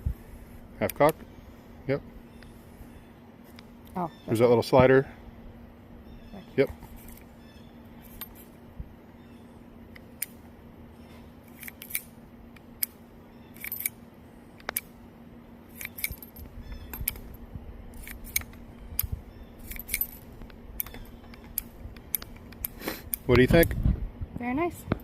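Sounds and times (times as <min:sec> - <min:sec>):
spent casings ejected: 0:08.0 - 0:08.6, 0:11.4 - 0:15.0, 0:15.7 - 0:23.6
revolver cylinder clicking: 0:14.6 - 0:15.0, 0:15.7 - 0:23.7.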